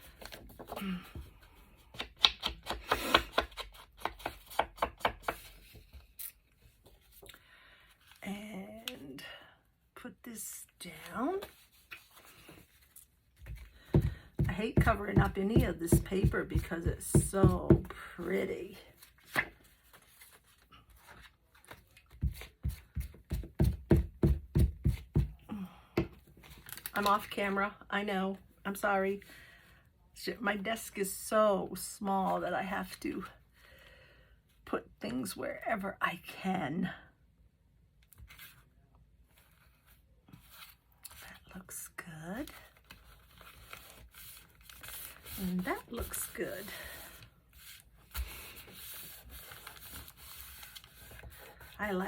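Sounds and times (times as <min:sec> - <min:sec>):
paper thumps and taps on table: 0:01.9 - 0:05.9, 0:13.4 - 0:17.9, 0:22.1 - 0:25.4
ink pad tapping on paper: 0:13.9 - 0:17.9.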